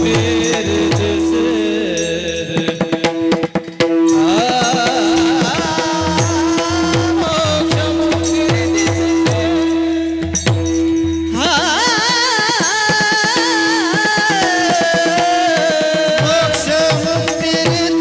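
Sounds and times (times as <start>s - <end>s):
man singing with vibrato: 0.0s - 18.0s
hand drum beat: 14.3s - 18.0s.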